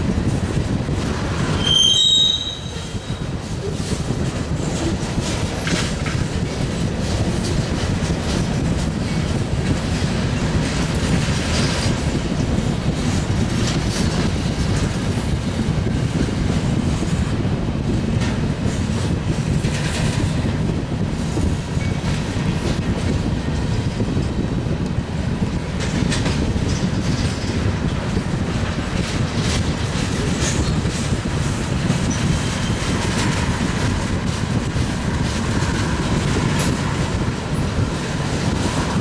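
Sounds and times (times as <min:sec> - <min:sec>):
freight train cars rolling past: 0:00.0 - 0:39.0
wheels clacking over rail joints: 0:02.5 - 0:17.1.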